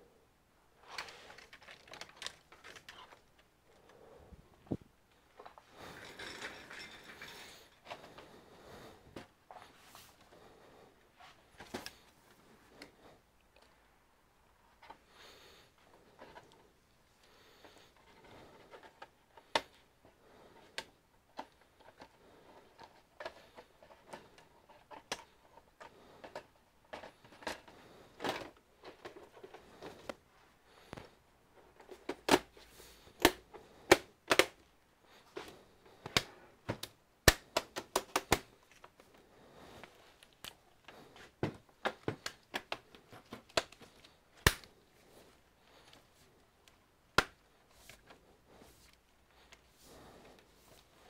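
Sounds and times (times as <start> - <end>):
computer parts clicking and tapping: 0.9 - 3.5.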